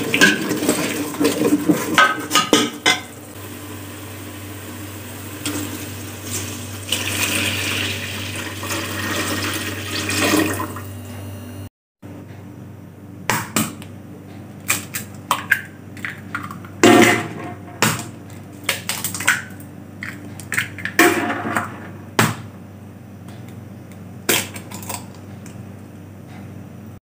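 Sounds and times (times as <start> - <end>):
utensils and cookware clattering: 0.0 - 3.1.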